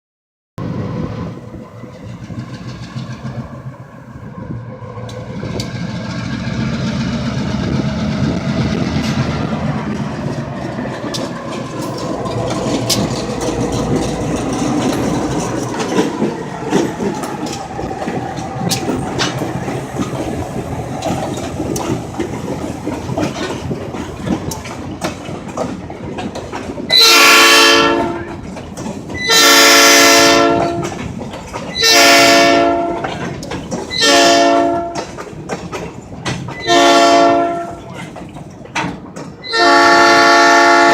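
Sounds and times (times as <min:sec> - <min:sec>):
train rumbling past: 0:00.6 - 0:40.9
wheels clicking over rail joints: 0:01.6 - 0:40.9
train horn blasts: 0:26.9 - 0:28.4, 0:29.2 - 0:31.0, 0:31.8 - 0:33.3, 0:34.0 - 0:35.1, 0:36.6 - 0:37.9, 0:39.4 - 0:40.9.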